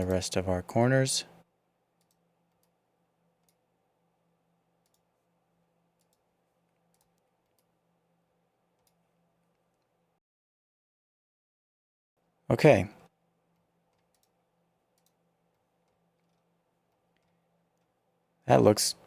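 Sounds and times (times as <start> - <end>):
computer mouse clicks: 2.0 - 2.8, 3.4 - 3.7, 4.8 - 5.1, 6.0 - 7.8, 8.7 - 9.9, 13.6 - 15.2, 15.8 - 17.9.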